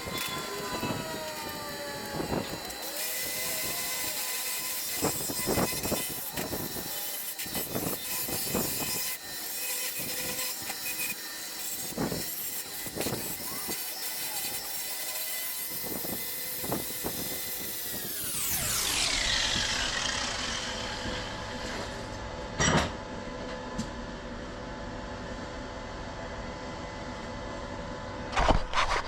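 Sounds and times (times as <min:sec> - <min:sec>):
angle grinder grinding steel: 0:00.0 - 0:22.2.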